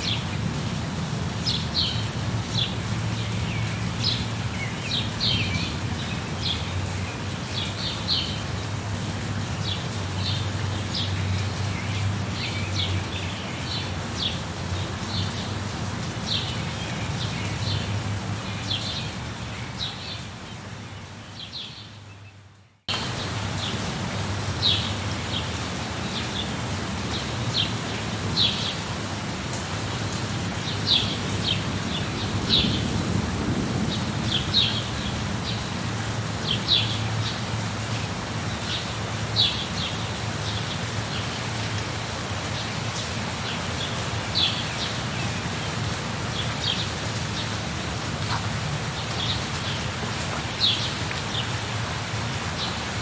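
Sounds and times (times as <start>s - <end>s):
steady rain: 0.0s - 53.0s
thunder rumbling: 31.2s - 35.4s.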